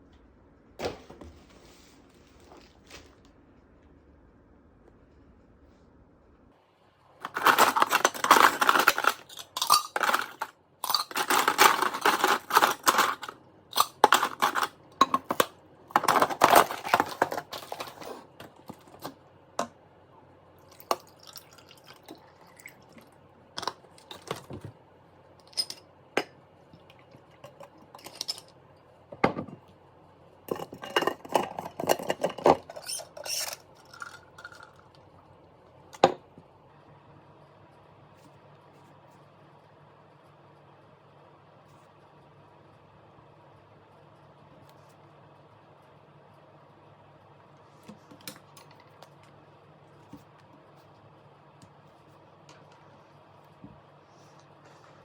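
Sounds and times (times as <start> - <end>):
dishes and utensils clattering: 7.2 - 18.2, 30.5 - 34.7.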